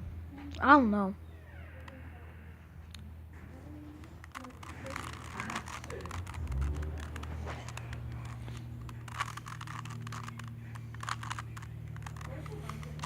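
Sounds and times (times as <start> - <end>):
plastic cube puzzle clicking: 4.0 - 13.0.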